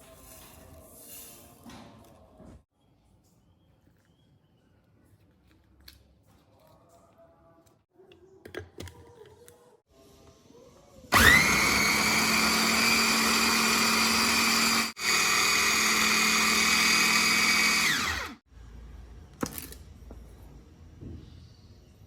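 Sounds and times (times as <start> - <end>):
electric blender running: 11.1 - 18.4.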